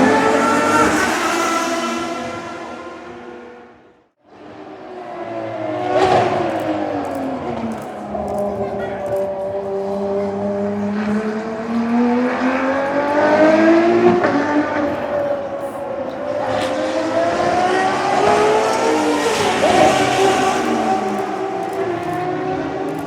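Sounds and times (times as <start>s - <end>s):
race car engines accelerating: 0.0s - 23.0s.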